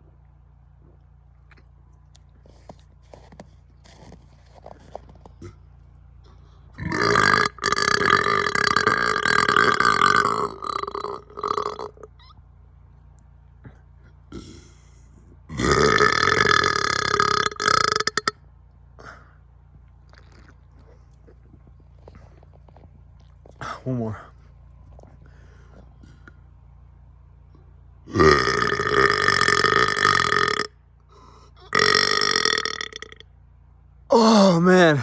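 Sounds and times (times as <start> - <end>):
person burping loudly: 5.4 - 5.6, 6.8 - 12.1, 14.3 - 14.8, 15.5 - 18.3, 28.1 - 30.7, 31.6 - 33.2.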